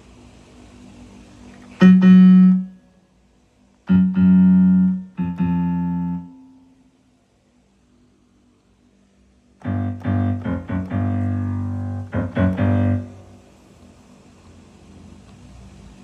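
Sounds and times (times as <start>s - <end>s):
keyboard piano notes: 1.7s - 2.9s, 3.9s - 6.7s, 9.6s - 13.6s.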